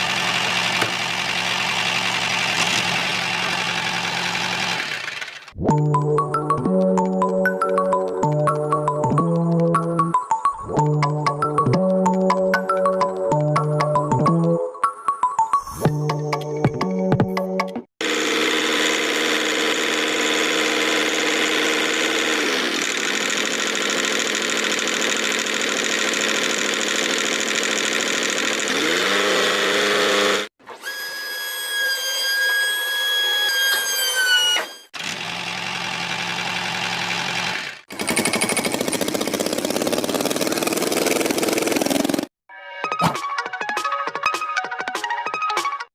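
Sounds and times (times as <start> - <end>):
small motor whining: 18.0 - 39.1.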